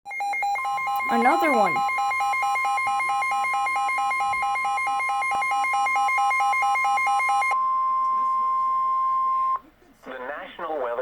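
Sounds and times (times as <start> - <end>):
steady high alert tone: 0.1 - 8.3
rapid pulsing alarm beep: 0.1 - 9.6.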